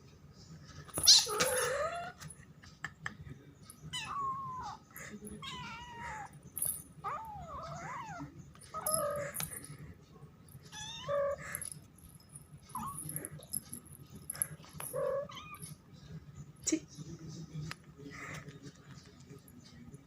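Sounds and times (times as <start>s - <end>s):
cat yowling: 1.0s - 2.2s, 5.4s - 6.3s, 7.0s - 9.4s, 10.7s - 11.6s.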